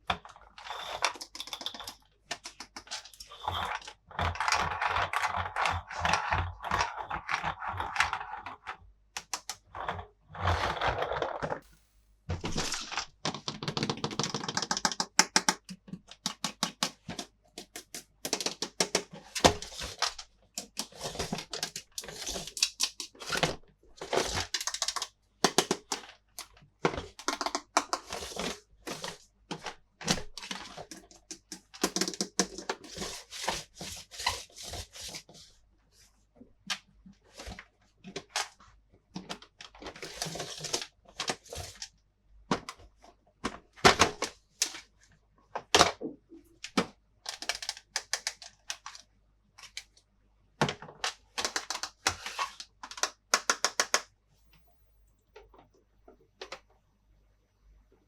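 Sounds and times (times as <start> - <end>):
plastic toy pieces clicking: 52.9 - 54.1.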